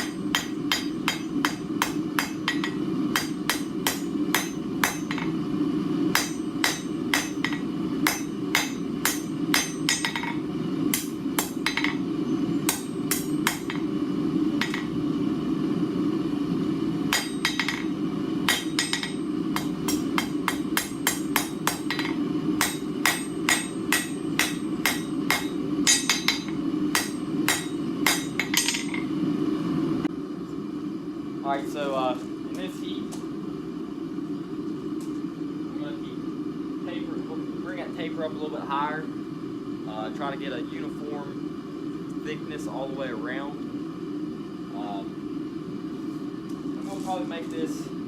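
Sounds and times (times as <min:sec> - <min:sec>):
hammer striking anvil: 0:00.0 - 0:05.4, 0:06.1 - 0:12.1, 0:12.7 - 0:13.9, 0:14.6 - 0:14.9, 0:17.1 - 0:29.1
steady low hum: 0:00.0 - 0:48.0.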